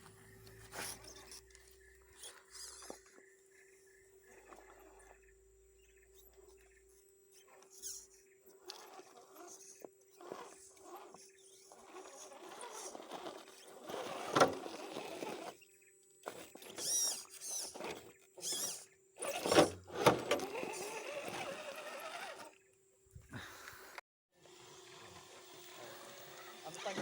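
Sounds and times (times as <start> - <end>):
toy car motor and gears whining: 0.0 - 22.7, 24.4 - 27.0
tyres scrabbling on dirt and rock: 8.6 - 22.6.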